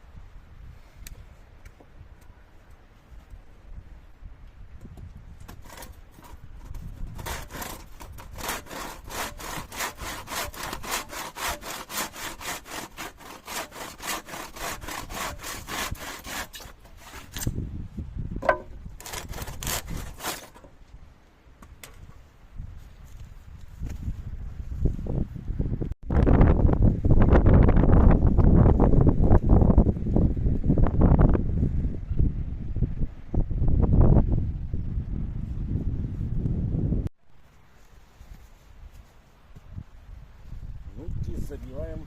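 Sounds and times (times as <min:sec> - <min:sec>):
wind rumble on microphone: 0:00.0 - 0:10.9, 0:14.5 - 0:20.2, 0:20.8 - 0:37.1, 0:37.9 - 0:42.0
hand saw cutting wood: 0:05.5 - 0:17.5, 0:18.5 - 0:20.7.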